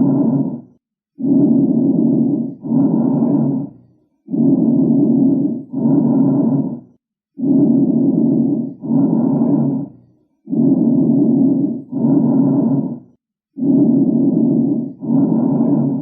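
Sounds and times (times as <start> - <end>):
lung breath sounds through stethoscope: 0.0 - 16.0.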